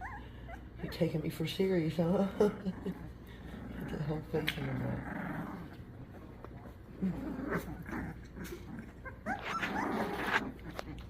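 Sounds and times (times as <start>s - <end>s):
puppies high cries: 0.0s - 0.8s, 8.8s - 10.6s
puppies scuffling: 0.8s - 11.0s.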